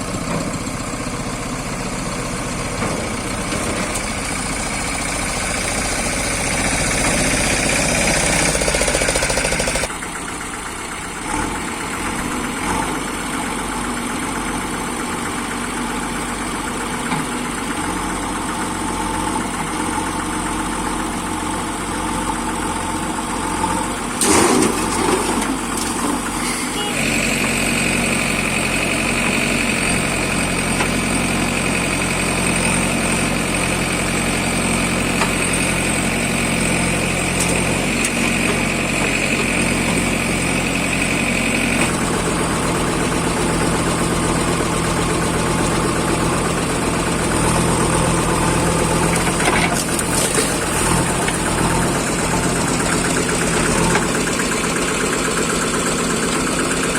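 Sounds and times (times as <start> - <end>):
heavy machinery engine running: 0.0 - 56.9.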